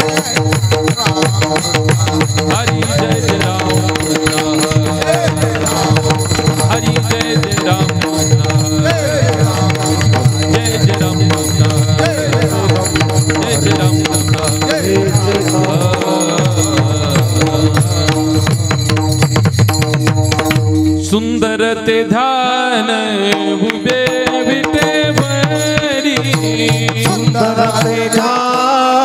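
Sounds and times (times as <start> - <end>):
small cymbals jingling: 0.0 - 21.3
fast hand-drum rhythm: 0.0 - 21.4, 23.2 - 28.6.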